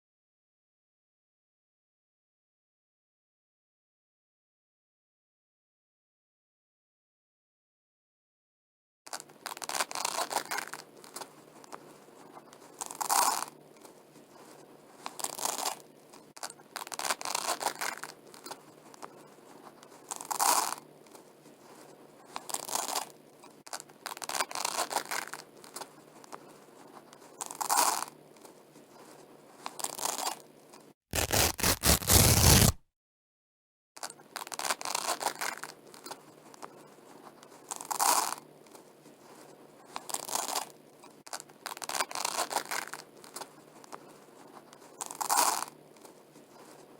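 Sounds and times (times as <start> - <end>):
velcro ripping apart: 31.1 - 32.8.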